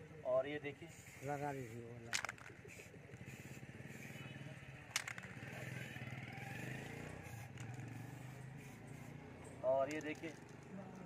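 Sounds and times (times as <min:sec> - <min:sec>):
motor engine running: 0:02.2 - 0:11.0.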